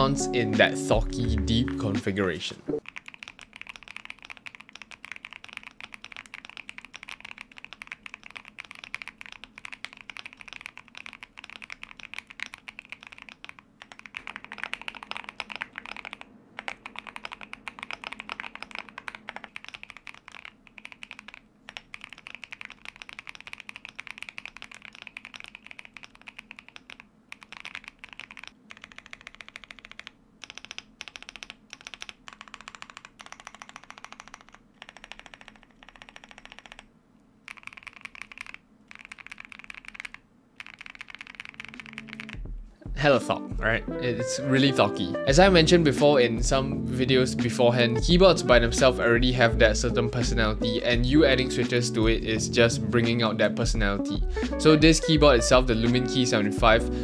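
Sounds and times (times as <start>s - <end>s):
deep mechanical keyboard typing: 2.8s - 42.4s.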